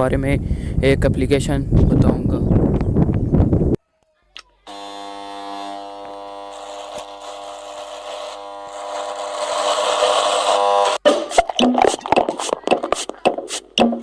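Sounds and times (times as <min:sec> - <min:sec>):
electric buzz with overtones: 0:04.7 - 0:11.0.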